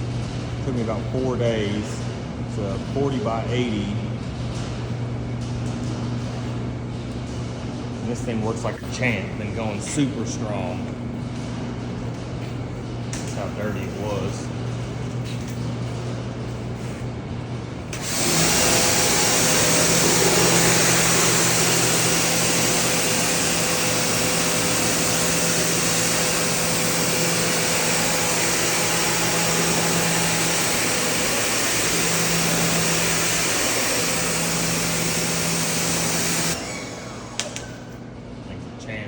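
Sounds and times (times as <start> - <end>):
motor and pump humming: 0.0 - 39.0
pressure washer water jet hissing: 17.9 - 37.9.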